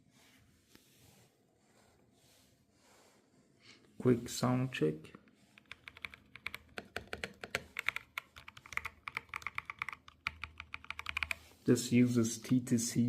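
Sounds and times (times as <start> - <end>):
mechanical keyboard typing clicks: 5.6 - 11.4.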